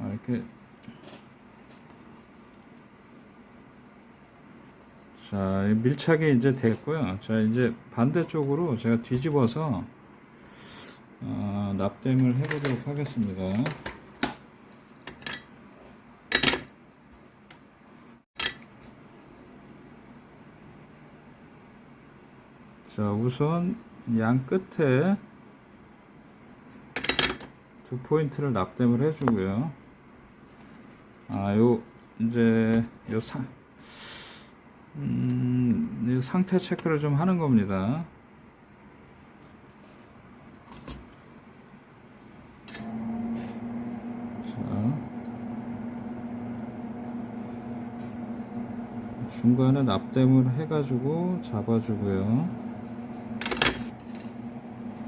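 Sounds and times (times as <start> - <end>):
low room hum: 0.0 - 55.0
steady low hum: 41.3 - 55.0.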